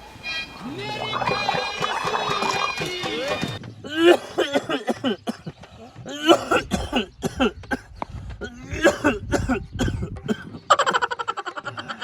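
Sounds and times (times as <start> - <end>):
man coughing harshly: 3.9 - 5.4, 6.1 - 10.5.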